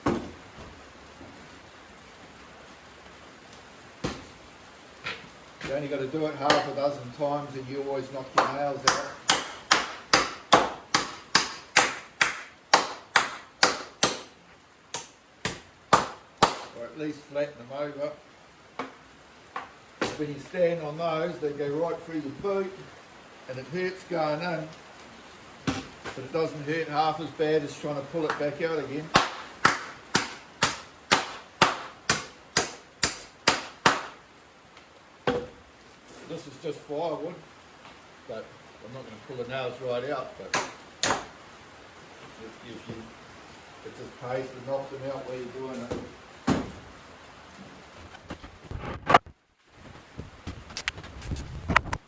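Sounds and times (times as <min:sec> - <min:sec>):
hammer striking nails in timber: 0:08.4 - 0:14.3, 0:29.1 - 0:34.2, 0:40.5 - 0:41.3.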